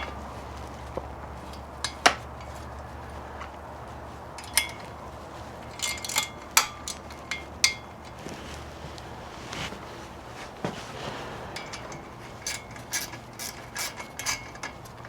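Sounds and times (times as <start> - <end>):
steady low hum: 7.6 - 15.0
metal tools clanking: 11.2 - 15.0.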